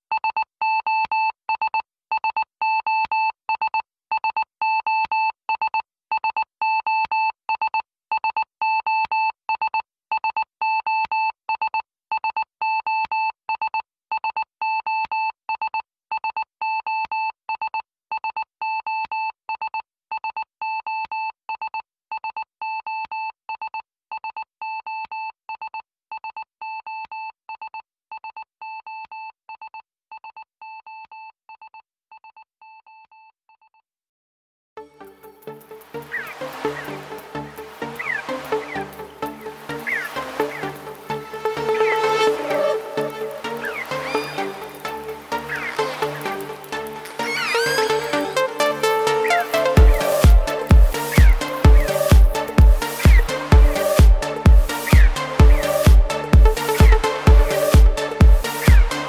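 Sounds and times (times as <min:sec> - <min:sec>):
staccato synthesizer note: 0:34.8 - 0:59.0.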